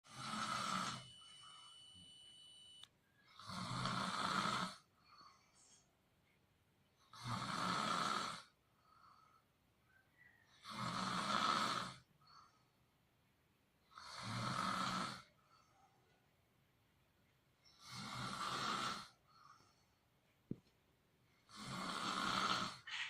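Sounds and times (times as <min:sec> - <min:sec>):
person snoring: 0:00.1 - 0:01.6, 0:03.3 - 0:04.9, 0:07.1 - 0:08.6, 0:10.6 - 0:12.1, 0:13.9 - 0:15.3, 0:17.8 - 0:19.6, 0:21.4 - 0:22.9
faint breaths: 0:00.1 - 0:02.5, 0:03.1 - 0:07.2, 0:08.4 - 0:13.1, 0:15.2 - 0:16.4, 0:17.6 - 0:23.0.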